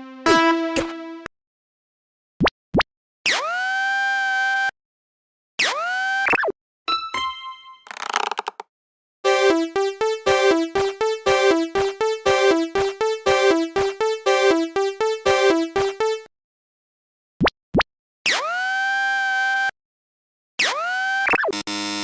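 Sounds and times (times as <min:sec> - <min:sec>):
electronic chime notes: 0:09.3 - 0:16.2.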